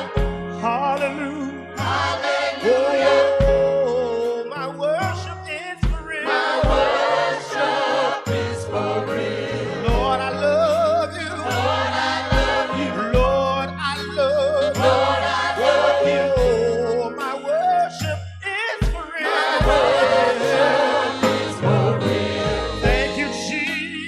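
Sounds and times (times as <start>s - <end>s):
gospel choir singing: 0.0s - 5.1s, 5.8s - 18.2s, 18.8s - 24.0s
instrumental accompaniment: 0.0s - 24.0s
low bass: 8.6s - 17.2s.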